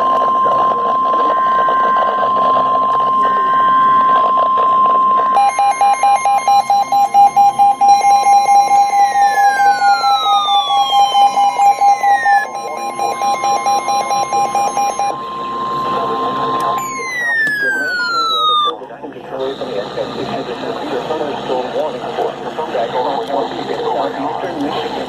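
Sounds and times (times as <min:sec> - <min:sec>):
rapid electronic alarm beeps: 0:00.0 - 0:18.8
steady loud alarm tone: 0:00.0 - 0:18.8
falling sweep tones: 0:06.9 - 0:18.8.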